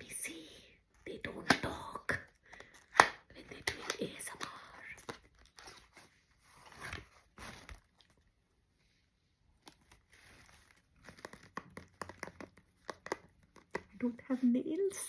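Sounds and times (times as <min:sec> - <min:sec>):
packaging crinkling and tearing: 0:02.4 - 0:08.4, 0:09.6 - 0:14.0.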